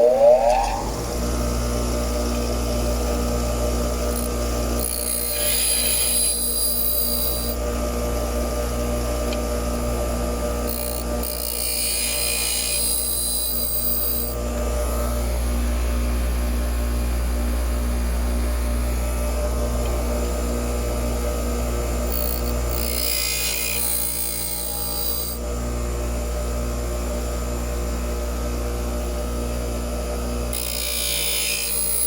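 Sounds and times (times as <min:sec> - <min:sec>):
grinder motor running: 0:00.0 - 0:15.5, 0:19.5 - 0:25.4
drill bit grinding on wheel: 0:04.1 - 0:07.6, 0:10.6 - 0:14.4, 0:22.1 - 0:25.4, 0:30.5 - 0:32.0.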